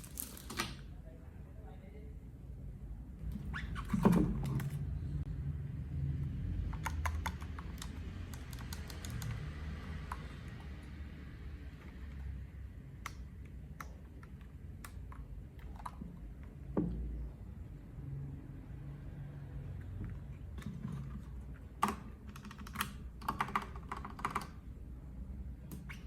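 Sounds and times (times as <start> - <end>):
mechanical keyboard key clacks: 6.7 - 9.4.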